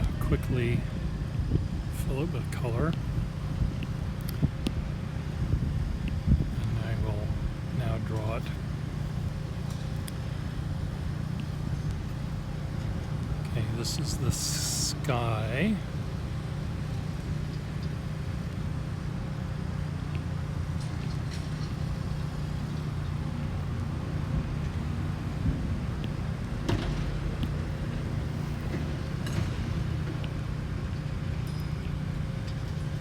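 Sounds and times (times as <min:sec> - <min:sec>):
city traffic rumble: 0:00.0 - 0:33.0.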